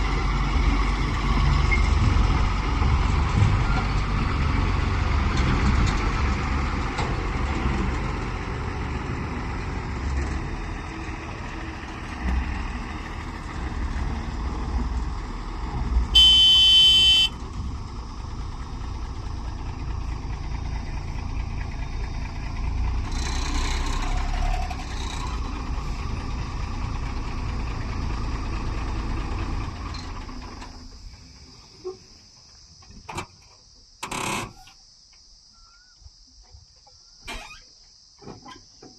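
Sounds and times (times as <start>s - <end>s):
diesel engines running: 0.0s - 31.8s
horn blast: 16.2s - 17.4s.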